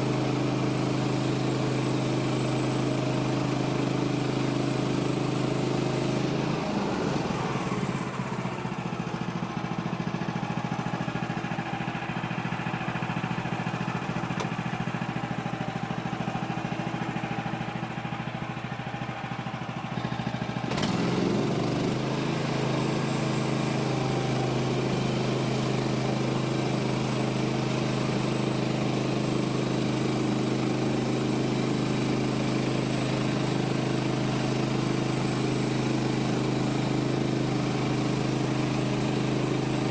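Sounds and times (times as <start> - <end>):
sawmill gas engine under load: 0.0 - 39.9
saw blade cutting log: 20.7 - 39.9.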